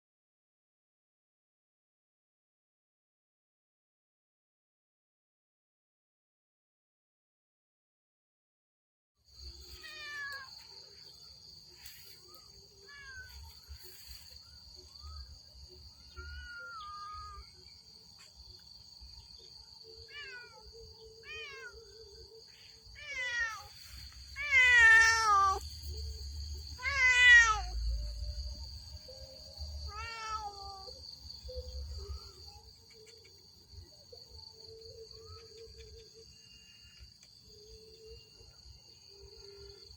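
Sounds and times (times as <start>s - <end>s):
cat meowing: 9.7s - 10.5s, 12.8s - 13.4s, 16.2s - 17.5s, 20.1s - 20.6s, 21.2s - 21.8s, 23.0s - 23.7s, 24.4s - 25.6s, 26.8s - 27.8s, 29.9s - 30.9s.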